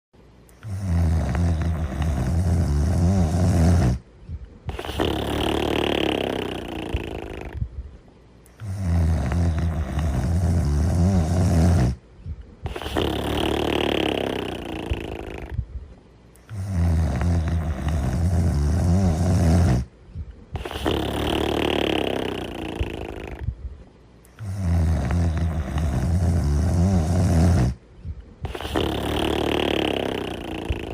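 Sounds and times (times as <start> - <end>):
low rumbling snore: 0.6 - 4.1, 4.7 - 7.8, 8.6 - 12.0, 12.6 - 15.7, 16.4 - 23.6, 24.4 - 27.8, 28.4 - 30.9.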